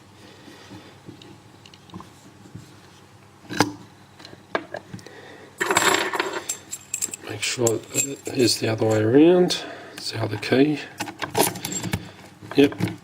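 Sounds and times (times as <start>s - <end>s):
keys jangling: 6.5s - 9.0s.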